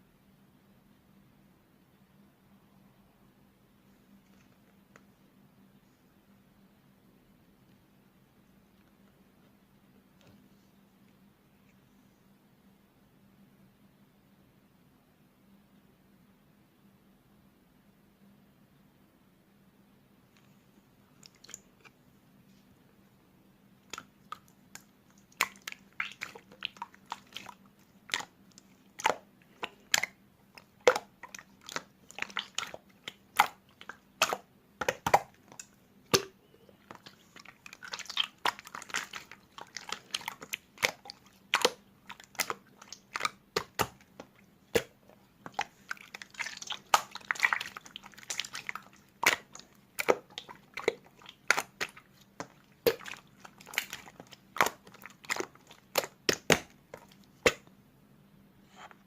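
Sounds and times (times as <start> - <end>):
slime popping when squeezed: 30.7 - 57.7.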